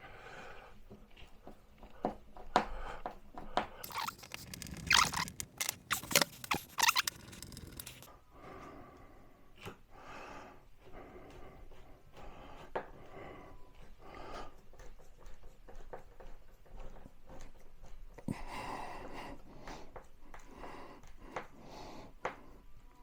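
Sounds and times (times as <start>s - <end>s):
screwdriver scraping and handling: 3.8s - 8.1s.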